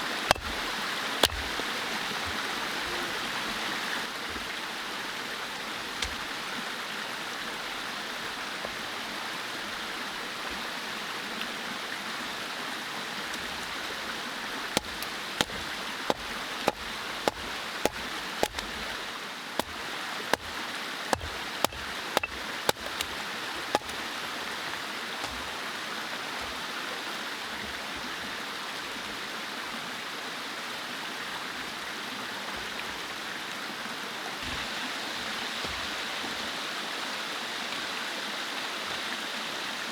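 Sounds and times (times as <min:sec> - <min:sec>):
mountain stream flowing: 0:00.0 - 0:39.9
sharp knocks: 0:00.3 - 0:01.6, 0:14.8 - 0:18.9, 0:19.6 - 0:23.1, 0:23.7 - 0:24.0.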